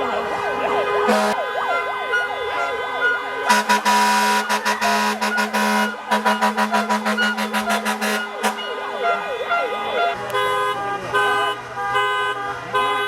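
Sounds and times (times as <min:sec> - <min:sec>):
siren wailing: 0:00.0 - 0:10.2
many car horns sounding: 0:00.0 - 0:13.0.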